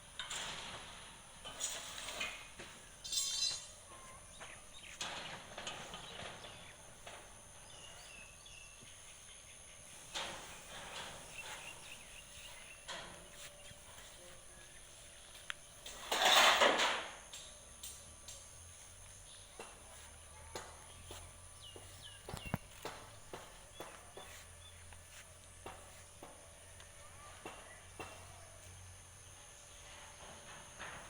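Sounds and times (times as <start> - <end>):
rustles and knocks: 4.3 - 7.6, 9.8 - 26.8.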